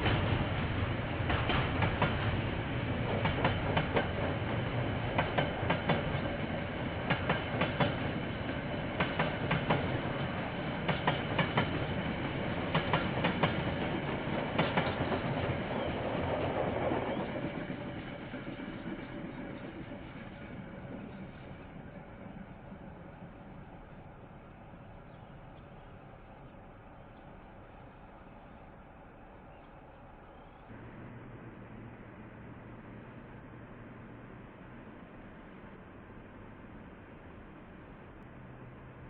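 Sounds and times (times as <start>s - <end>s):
train wheels clicking over rail joints: 0.0s - 27.5s
train rumble: 0.0s - 39.0s.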